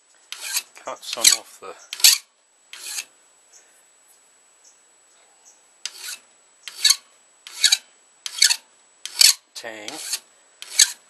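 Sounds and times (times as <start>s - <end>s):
file rasping on steel blade: 0.3s - 1.4s, 2.0s - 2.2s, 2.8s - 3.1s, 5.9s - 11.0s.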